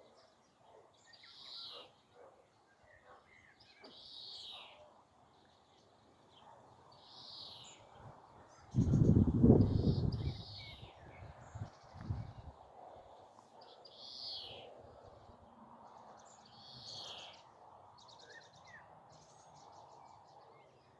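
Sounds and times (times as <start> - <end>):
low wind rumble on microphone: 8.7 - 12.6.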